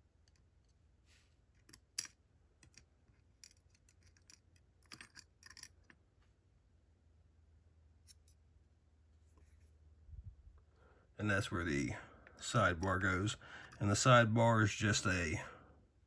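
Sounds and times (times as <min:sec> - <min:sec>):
small metal parts clicking: 0:01.5 - 0:06.0.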